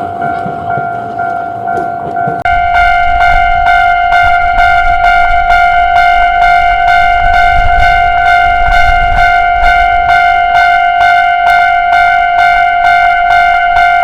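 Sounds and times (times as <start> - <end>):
level-crossing warning bell ringing: 0.0 - 14.0
low rumble: 2.4 - 13.8.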